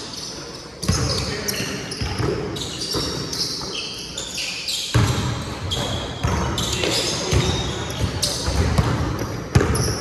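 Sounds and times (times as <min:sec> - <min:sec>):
basketball bouncing on court floor: 0:04.9 - 0:10.0.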